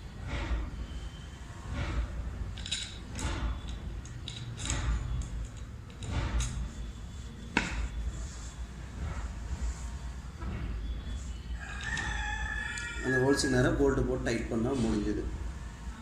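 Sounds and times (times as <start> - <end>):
metal parts clinking and scraping: 1.8 - 9.9, 11.0 - 13.7.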